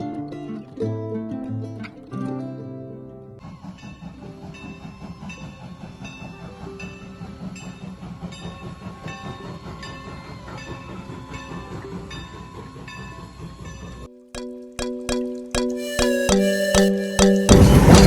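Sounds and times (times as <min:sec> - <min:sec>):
train rumbling: 0:03.4 - 0:14.1, 0:15.8 - 0:18.0.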